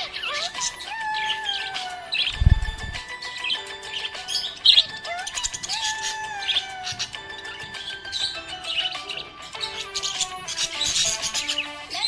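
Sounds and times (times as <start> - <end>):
budgerigar chirping: 0.0 - 12.0
looping background melody: 0.0 - 12.0
low thump: 2.4 - 3.0.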